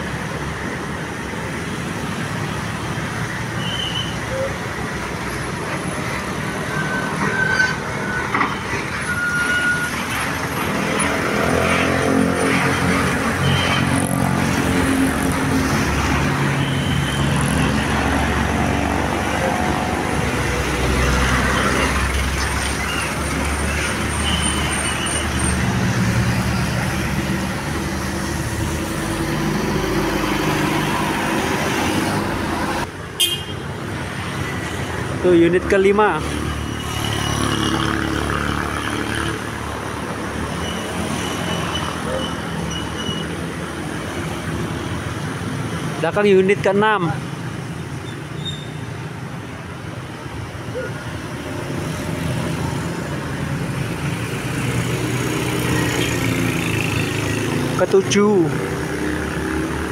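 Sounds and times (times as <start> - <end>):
diesel buses passing: 0.0 - 59.9
road traffic: 0.0 - 59.9.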